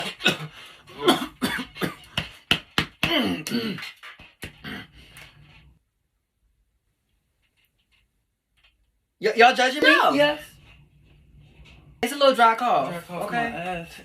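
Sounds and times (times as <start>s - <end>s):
woman coughing: 0.0s - 2.1s, 3.1s - 3.8s.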